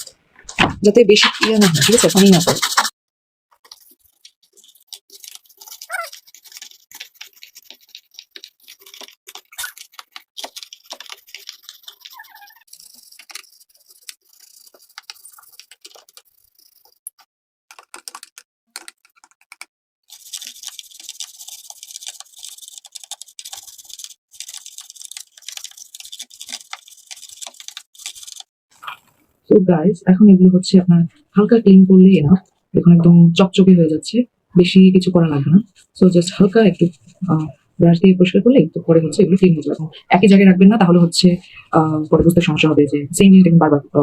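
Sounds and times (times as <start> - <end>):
brush scrubbing keycaps: 0.9 - 2.9, 3.5 - 29.0.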